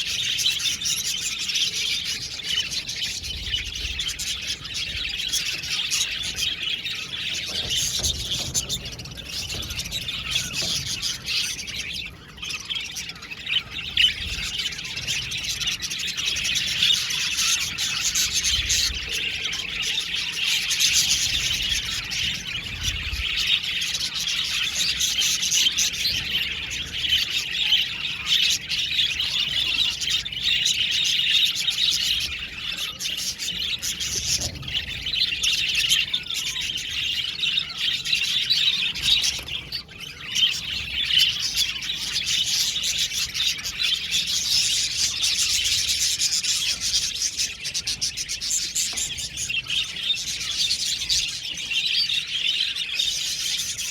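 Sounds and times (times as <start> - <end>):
budgerigars chirping and warbling: 0.0 - 53.9.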